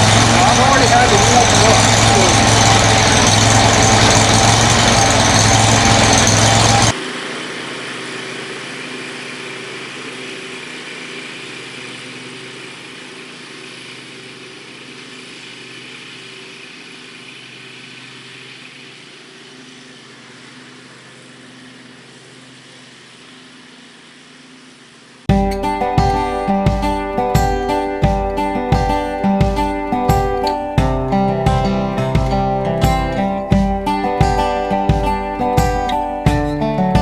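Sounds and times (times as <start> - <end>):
mower engine running: 0.0 - 37.0.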